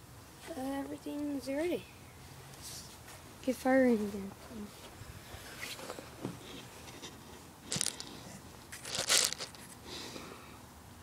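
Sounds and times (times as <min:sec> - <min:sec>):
rustling scraping handling noise: 0:03.9 - 0:09.8.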